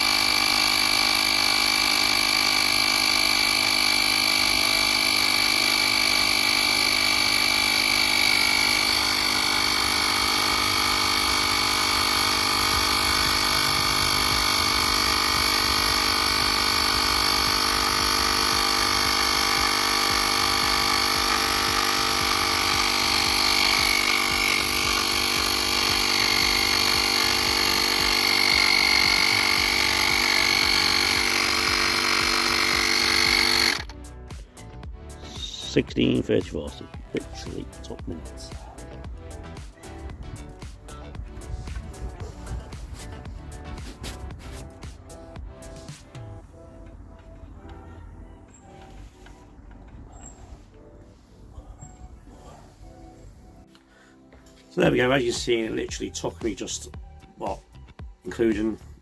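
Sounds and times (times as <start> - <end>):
electric compressor whining: 0.0 - 59.0.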